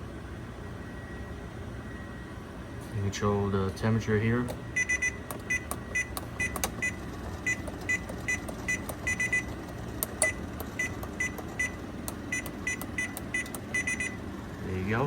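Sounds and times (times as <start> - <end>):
short high beeps: 4.8 - 9.5, 10.2 - 14.2.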